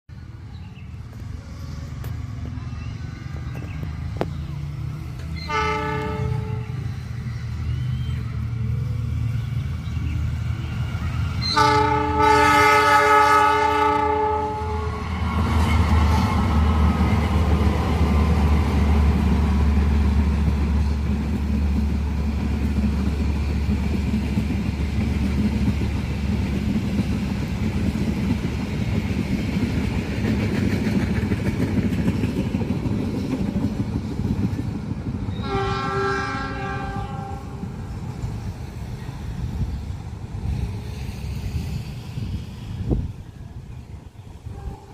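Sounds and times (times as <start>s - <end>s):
train horn blast: 5.4s - 7.0s, 11.4s - 15.2s, 35.3s - 37.9s, 44.4s - 44.9s
train wheels clattering on rails: 15.3s - 37.0s.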